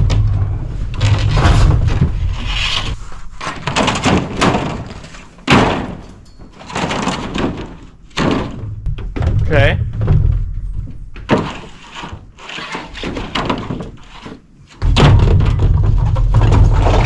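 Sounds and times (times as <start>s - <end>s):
low rumble: 0.0s - 3.7s, 8.6s - 11.3s
roofing panels knocking: 0.0s - 17.0s.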